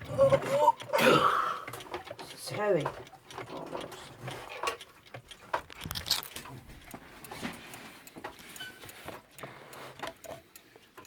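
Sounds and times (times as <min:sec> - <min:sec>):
clock being handled clicks and knocks: 0:01.6 - 0:11.0.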